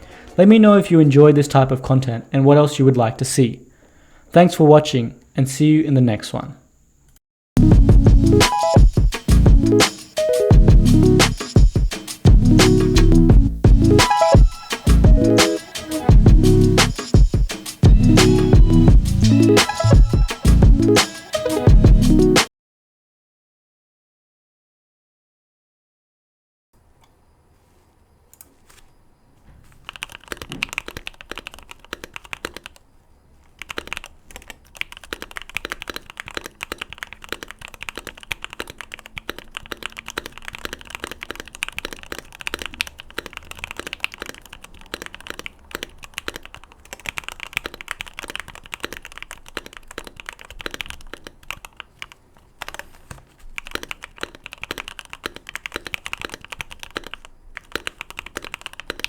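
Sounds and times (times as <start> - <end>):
mechanical keyboard typing: 29.8 - 32.8, 33.5 - 59.0.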